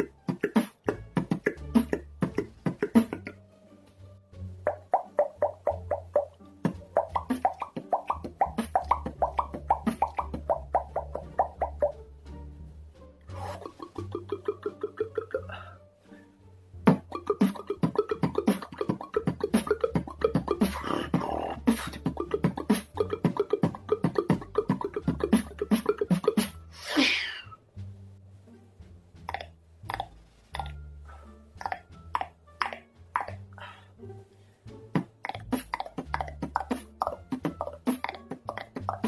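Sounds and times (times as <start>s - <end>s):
beatboxing tongue clicks: 0.0s - 3.4s, 4.7s - 12.0s, 13.6s - 15.5s, 16.9s - 26.6s, 29.2s - 30.8s, 31.6s - 33.4s, 34.9s - 39.0s
swooping sound: 4.7s - 12.0s.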